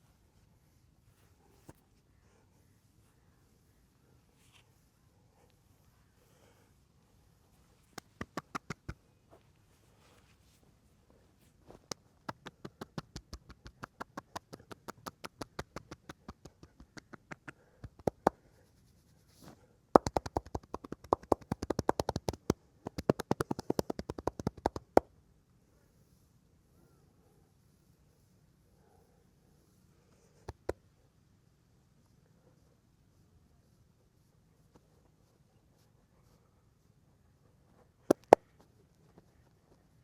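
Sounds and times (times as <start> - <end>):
hands slapping body: 7.9 - 9.0, 11.7 - 18.4, 20.0 - 25.1, 30.4 - 30.8, 38.1 - 38.5.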